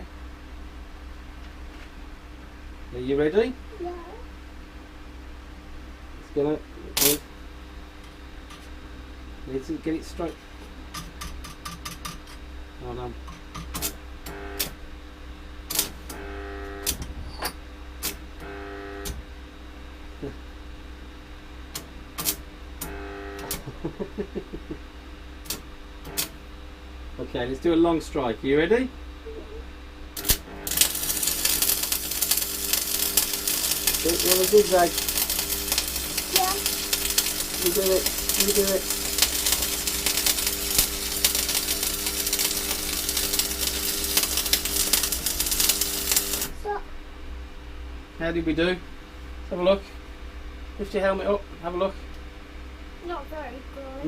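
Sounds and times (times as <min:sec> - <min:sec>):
arc welder humming: 0:02.3 - 0:53.2
brief welder buzz: 0:07.0 - 0:07.3, 0:13.8 - 0:14.8, 0:15.7 - 0:19.2, 0:21.8 - 0:23.7, 0:25.4 - 0:26.4, 0:30.2 - 0:46.6
electrode strike crackles: 0:30.2 - 0:46.5.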